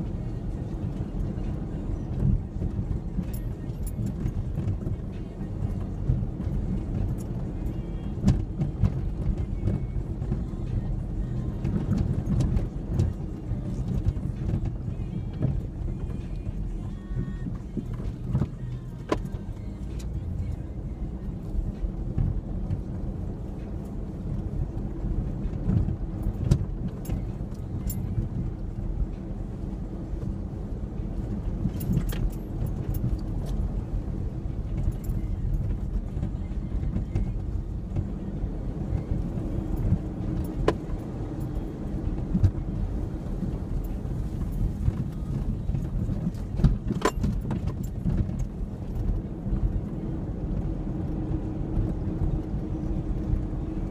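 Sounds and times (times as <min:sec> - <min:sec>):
sharp clicks and jangling rattles: 0:02.2 - 0:09.9, 0:25.1 - 0:29.7, 0:30.3 - 0:36.3, 0:39.2 - 0:49.2.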